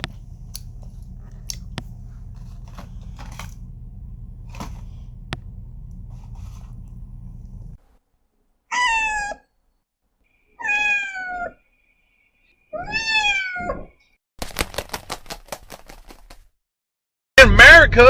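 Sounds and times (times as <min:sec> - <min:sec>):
rapid clicks: 0:00.0 - 0:07.8
cat meowing: 0:12.8 - 0:13.8.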